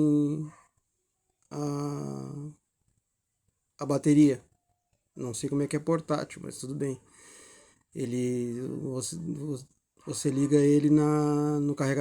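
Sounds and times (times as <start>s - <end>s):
man saying ehh: 0.0s - 0.6s, 1.6s - 2.5s, 8.0s - 12.0s.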